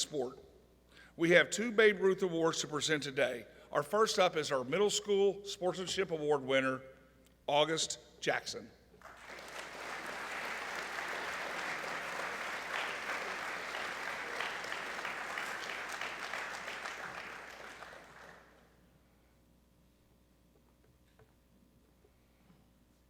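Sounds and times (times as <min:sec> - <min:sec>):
audience applauding: 0:09.0 - 0:18.6.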